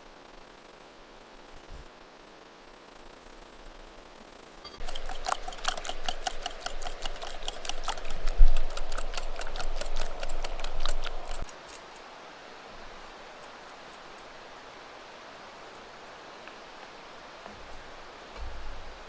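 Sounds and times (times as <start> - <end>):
faint steady whirr: 0.0 - 19.0
rapid mechanical clicks: 4.7 - 11.6.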